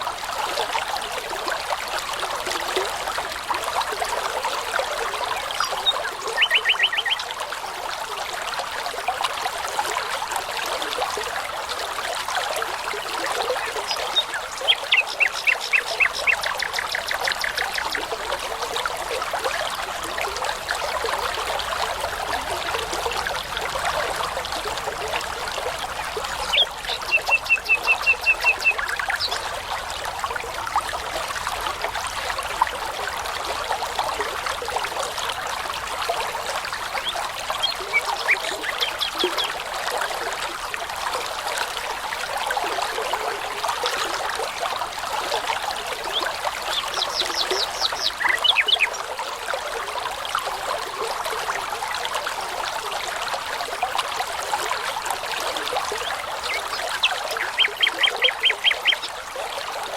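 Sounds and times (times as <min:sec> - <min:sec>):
babbling brook: 0:00.0 - 0:59.9
nightingale singing: 0:05.7 - 0:07.2.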